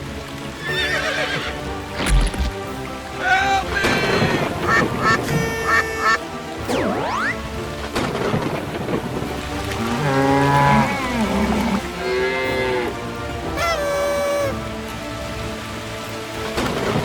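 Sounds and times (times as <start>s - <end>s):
heavy rain: 0.0s - 17.0s
short pitched cartoon calls: 5.0s - 6.2s
thunder: 7.9s - 9.4s.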